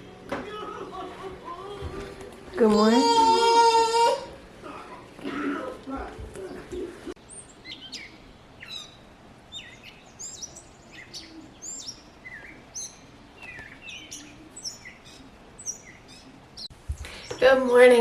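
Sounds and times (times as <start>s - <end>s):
small birds chirping: 4.8s - 18.0s.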